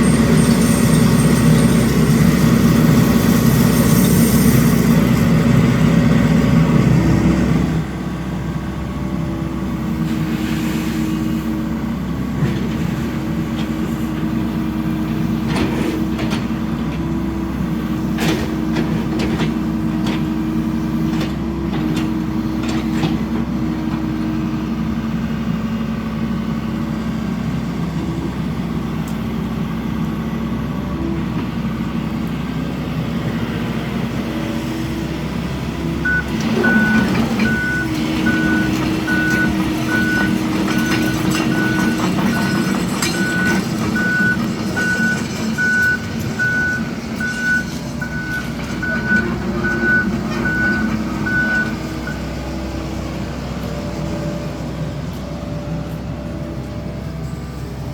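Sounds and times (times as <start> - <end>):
excavator diesel engine running: 0.0 - 57.9
travel alarm beeping: 36.0 - 52.2.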